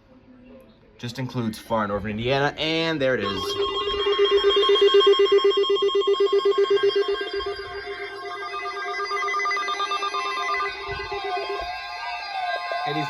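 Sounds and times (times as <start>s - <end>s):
fast-pulsing low electronic beep: 3.2s - 13.0s
higher beeping tone: 3.2s - 13.0s.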